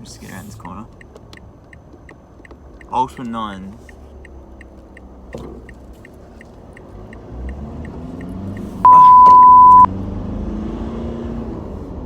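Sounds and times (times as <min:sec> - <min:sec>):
engine rumble from inside cab: 0:00.0 - 0:12.0
turn signal ticking: 0:00.5 - 0:09.9.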